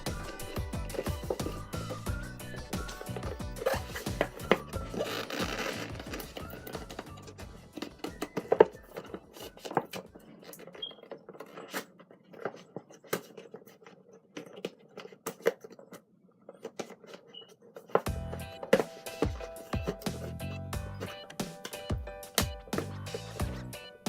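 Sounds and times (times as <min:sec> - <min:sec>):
music: 0:00.0 - 0:10.2, 0:18.1 - 0:24.0
plastic and cardboard scraping: 0:00.0 - 0:21.3, 0:22.4 - 0:23.9.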